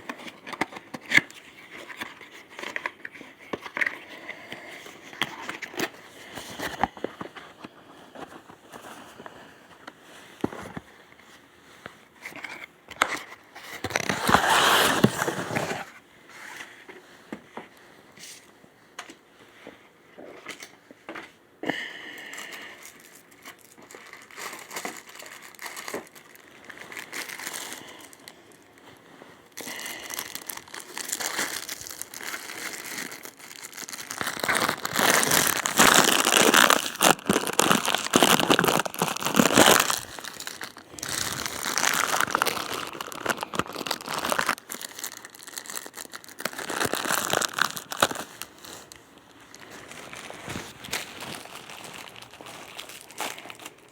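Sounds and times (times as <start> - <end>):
packaging crinkling and rustling: 0.0 - 19.2, 22.4 - 53.9.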